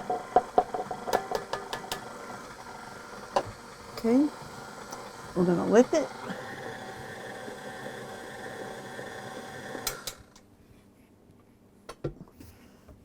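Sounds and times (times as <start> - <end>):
electric mixer running: 0.0 - 10.4.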